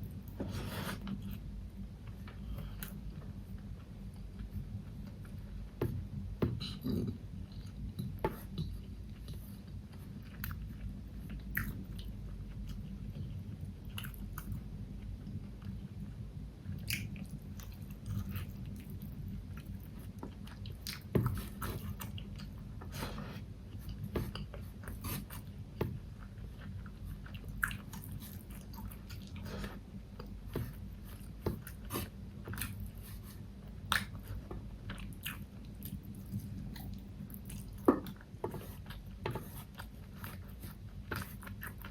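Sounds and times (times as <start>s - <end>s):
steady low hum: 0.0s - 41.9s
chewing and biting food: 23.7s - 41.9s.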